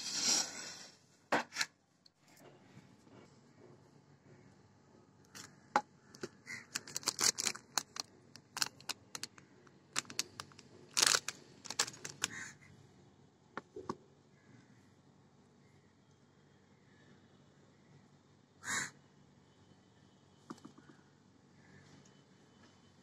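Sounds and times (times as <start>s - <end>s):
crunching fried snacks: 6.5s - 12.4s.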